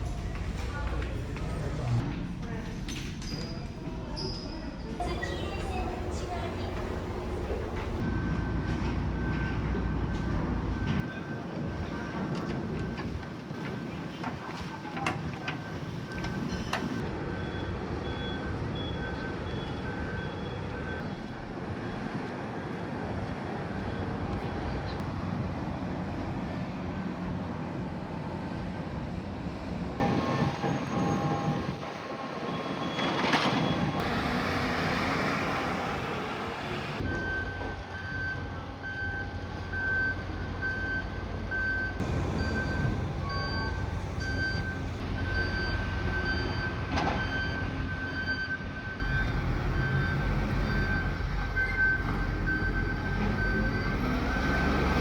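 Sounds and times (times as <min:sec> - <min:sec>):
engines running: 0:00.0 - 0:03.0, 0:04.9 - 0:20.1, 0:28.3 - 0:55.0
vehicle reversing alarms beeping: 0:05.0 - 0:24.9, 0:30.0 - 0:55.0.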